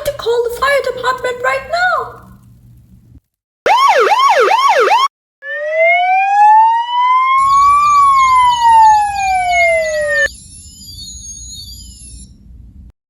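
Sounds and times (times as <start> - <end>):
fast yelping siren: 3.7 - 10.3
slow wailing siren: 3.7 - 10.3
warbling siren: 3.7 - 12.4.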